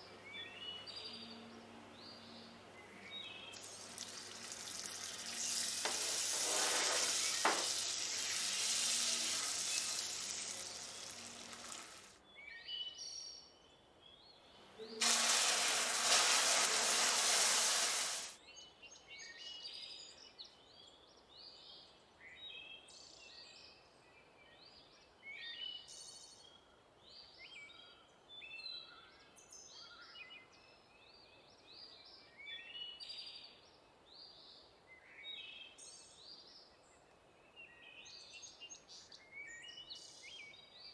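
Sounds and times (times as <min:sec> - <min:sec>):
food sizzling in a hot pan: 0:03.5 - 0:12.2, 0:15.0 - 0:18.4.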